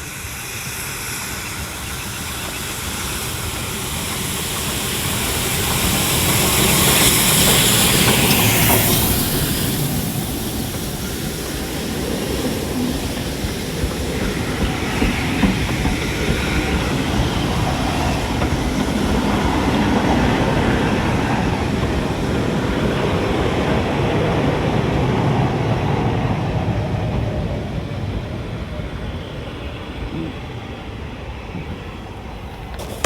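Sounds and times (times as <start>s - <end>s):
steam train rumbling on rails: 0.0s - 33.0s.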